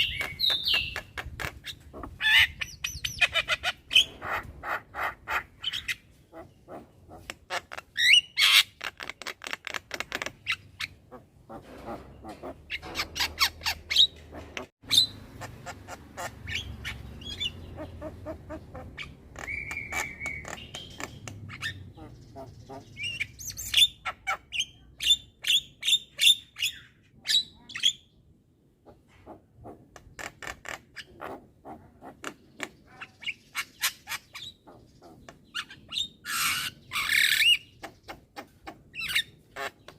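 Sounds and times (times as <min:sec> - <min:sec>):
myna chattering and squawking: 0:00.0 - 0:24.8.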